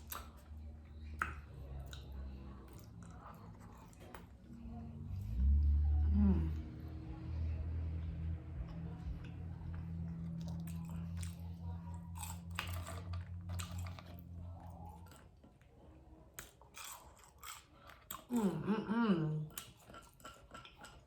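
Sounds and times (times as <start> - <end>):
chewing food: 0.0 - 5.4, 6.6 - 18.6, 19.4 - 21.0
low hum: 0.0 - 16.2
wet mouth clicks: 1.1 - 2.1.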